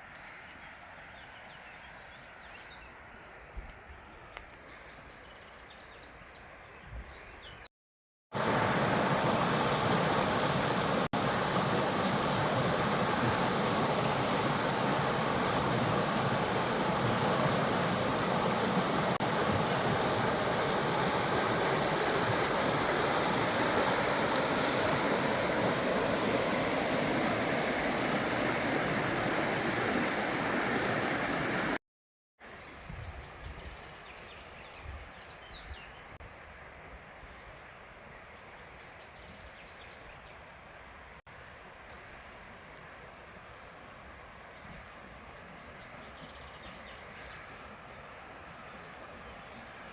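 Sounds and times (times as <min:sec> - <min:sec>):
quiet forest background: 0:00.0 - 0:07.7, 0:32.4 - 0:49.9
stream rushing over waterfall: 0:08.4 - 0:31.8.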